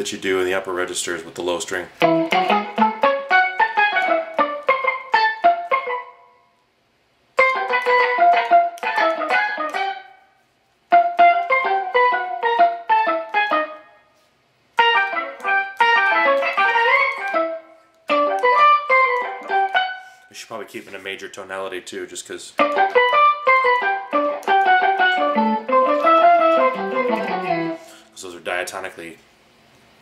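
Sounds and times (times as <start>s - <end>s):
palm-muted electric guitar notes: 2.0s - 6.4s, 7.4s - 10.2s, 10.9s - 14.0s, 14.8s - 20.1s, 22.6s - 28.1s.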